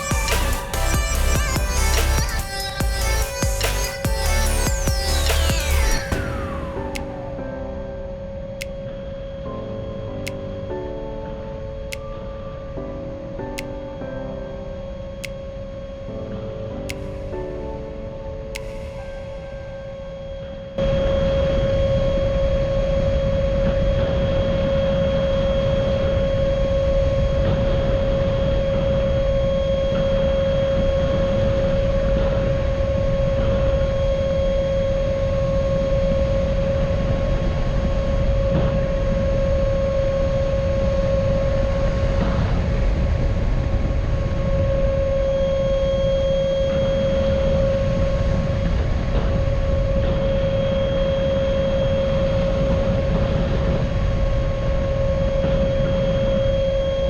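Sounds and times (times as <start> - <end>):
low noisy rush: 0.0 - 57.0.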